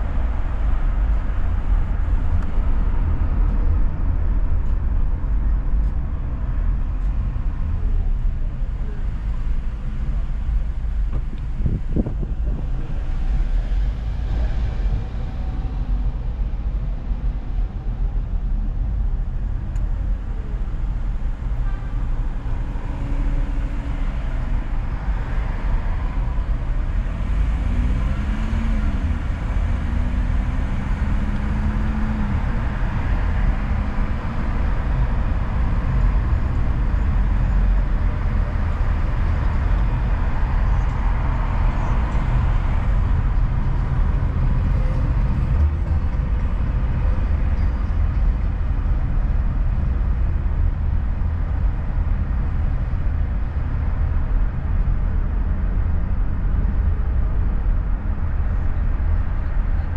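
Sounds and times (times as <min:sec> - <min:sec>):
car driving rumble: 0:00.0 - 0:59.9.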